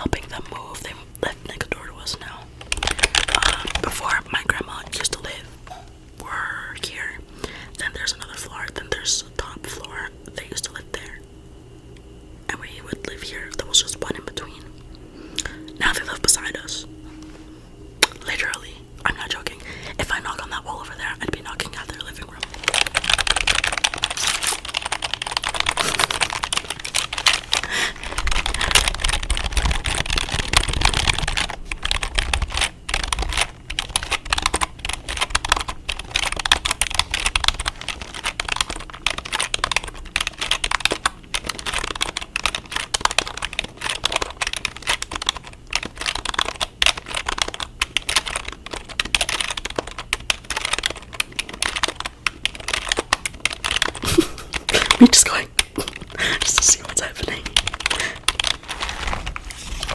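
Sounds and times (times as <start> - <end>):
fast typing on keyboard: 2.6 - 5.4, 20.2 - 59.2.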